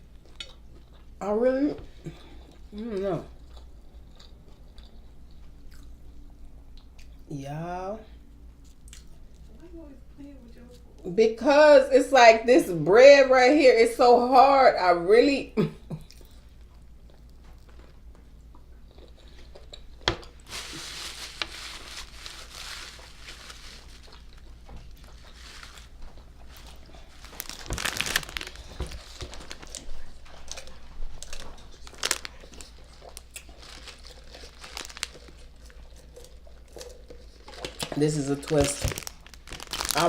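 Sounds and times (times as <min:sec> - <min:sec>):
paper wrapper crinkling: 0:20.4 - 0:40.0.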